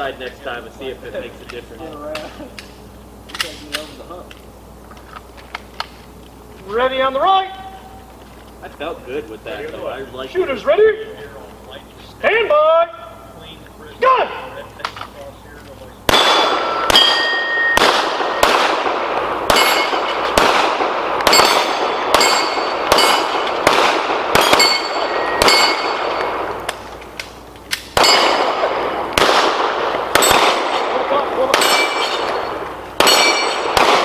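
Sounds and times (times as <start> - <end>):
steel plates ringing: 16.1 - 18.4, 19.4 - 20.4, 21.2 - 23.6, 24.3 - 26.6, 27.9 - 28.7, 31.5 - 33.8
pistol shots: 16.1 - 34.0.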